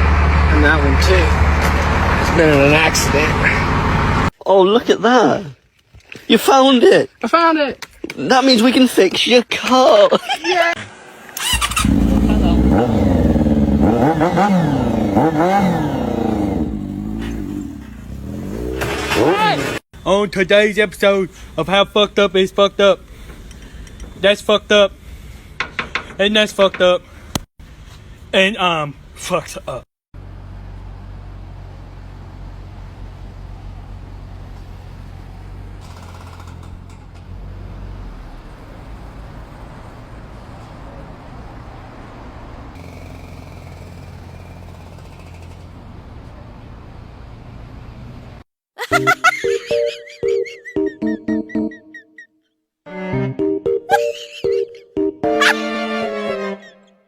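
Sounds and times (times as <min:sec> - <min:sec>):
engine revving: 0:00.0 - 0:04.3, 0:11.4 - 0:19.8, 0:42.7 - 0:45.8
heavy machine engine rumbling: 0:00.0 - 0:04.3.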